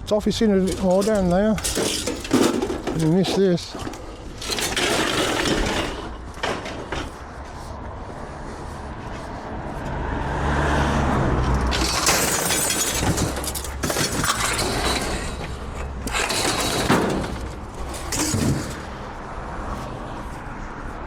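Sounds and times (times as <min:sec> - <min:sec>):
scrap metal clattering and crashing: 0:00.6 - 0:07.3, 0:11.6 - 0:19.0
breaking shattering sound: 0:11.7 - 0:15.4.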